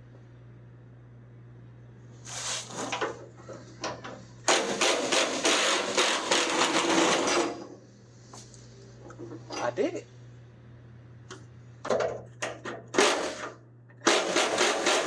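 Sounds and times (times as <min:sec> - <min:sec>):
cordless impact wrench hammering: 0:12.9 - 0:15.0.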